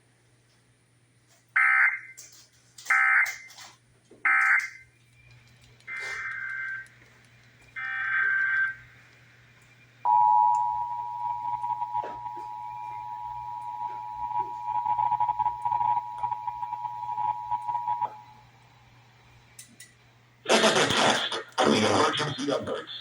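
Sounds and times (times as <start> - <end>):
two-tone attention signal: 10.1 - 18.3.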